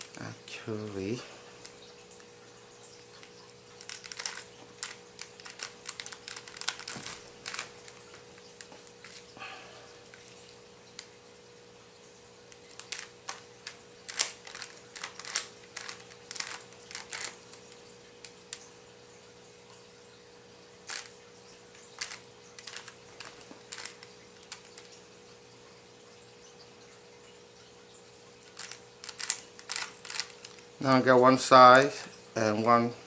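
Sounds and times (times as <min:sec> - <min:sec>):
puzzle cube layers clacking: 0:03.8 - 0:08.0, 0:12.7 - 0:17.7, 0:20.9 - 0:21.1, 0:22.0 - 0:24.9, 0:28.5 - 0:32.0.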